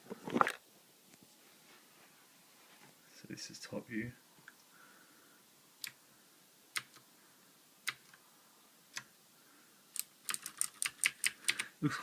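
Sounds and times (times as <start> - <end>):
mechanical keyboard switches clicking: 10.0 - 11.7.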